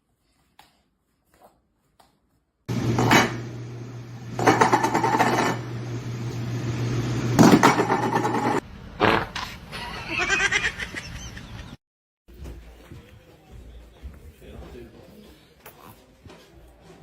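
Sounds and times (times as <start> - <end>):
steady low hum: 2.7 - 8.6.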